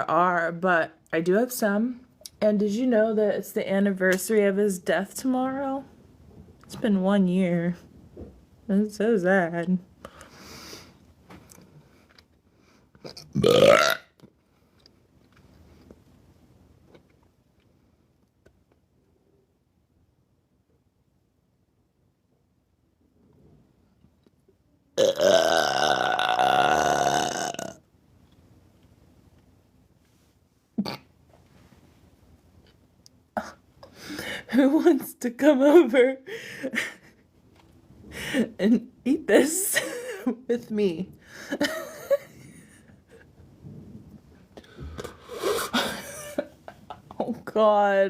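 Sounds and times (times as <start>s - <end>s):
person breathing: 10.0s - 11.0s, 33.8s - 34.5s, 44.6s - 45.8s
long loud burp: 13.1s - 14.1s, 25.0s - 27.8s.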